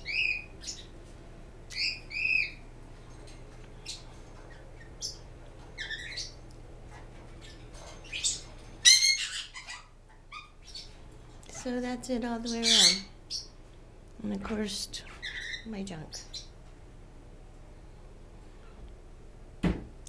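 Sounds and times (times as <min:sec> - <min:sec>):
pet birds squawking and chirping: 0:00.0 - 0:01.0, 0:01.7 - 0:02.7, 0:03.8 - 0:13.6, 0:14.6 - 0:16.6
faint steady hum: 0:00.0 - 0:20.0.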